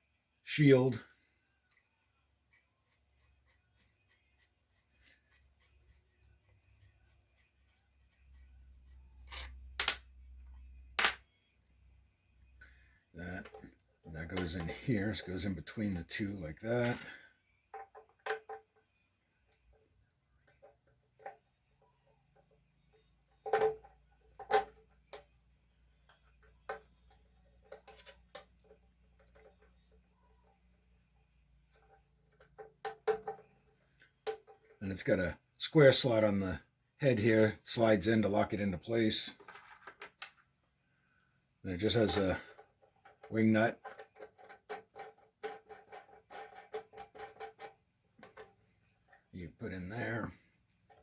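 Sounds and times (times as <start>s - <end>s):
clicks and knocks of parts: 9.3s - 10.1s, 16.8s - 18.8s, 23.4s - 25.3s, 26.1s - 29.8s, 39.4s - 40.6s.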